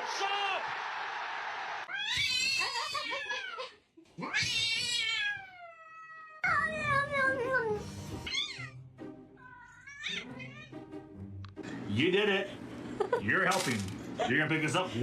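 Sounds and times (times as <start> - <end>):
cat meowing loudly: 1.9 - 3.6, 4.2 - 6.4, 9.4 - 10.7.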